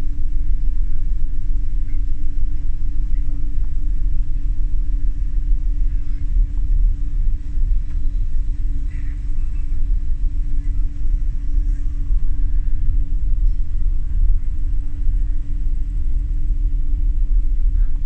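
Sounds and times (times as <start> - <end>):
ferry engines rumbling: 3.1 - 18.0.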